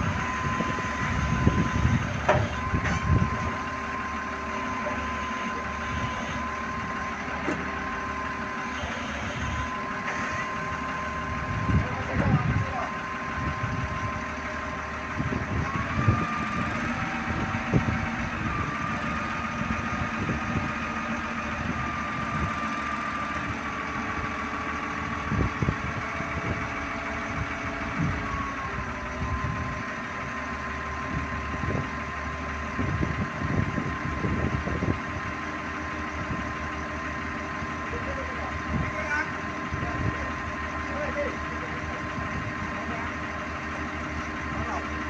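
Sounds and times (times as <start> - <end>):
motor running with high whine: 0.0 - 14.5.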